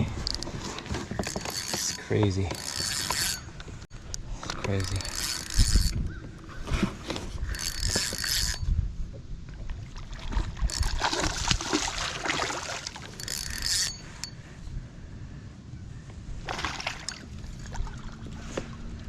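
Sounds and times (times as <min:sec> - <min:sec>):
water splashing: 0:09.7 - 0:13.3, 0:16.4 - 0:19.0.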